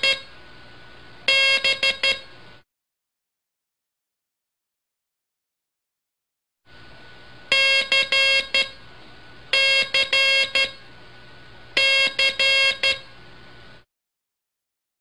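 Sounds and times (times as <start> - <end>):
buzzy morse code tone: 0.0 - 0.3, 1.3 - 2.3, 7.5 - 8.8, 9.5 - 10.8, 11.8 - 13.2.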